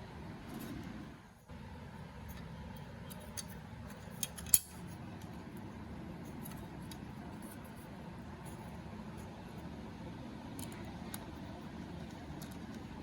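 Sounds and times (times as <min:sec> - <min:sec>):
small metallic clicks: 0:02.2 - 0:05.3.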